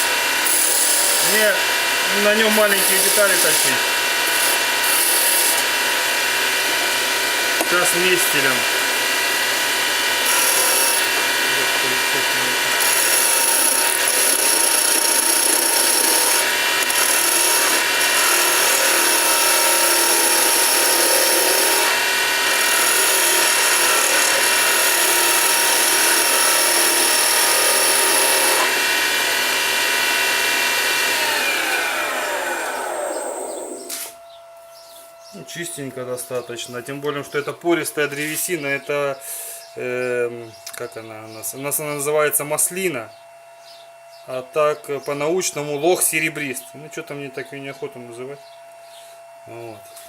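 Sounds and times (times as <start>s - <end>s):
chisel scraping wood: 0.0s - 1.4s, 2.5s - 5.7s, 10.2s - 11.3s, 12.8s - 28.7s
wood lathe motor whining: 0.0s - 34.1s.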